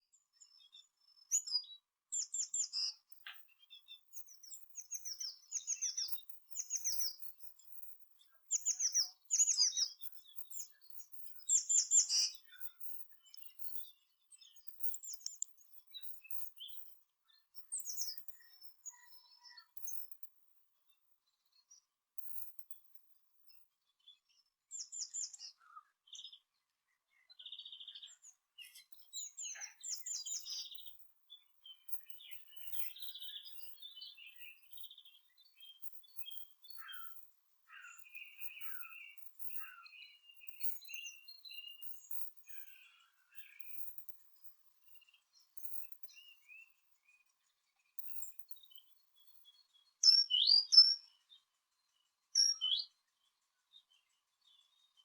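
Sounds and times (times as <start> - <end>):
songbirds chirping and twittering: 0.0 - 55.0.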